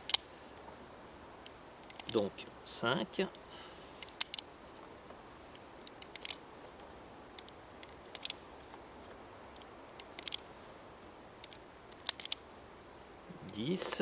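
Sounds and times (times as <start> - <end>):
cartridges clicking into magazine: 11.4 - 12.4.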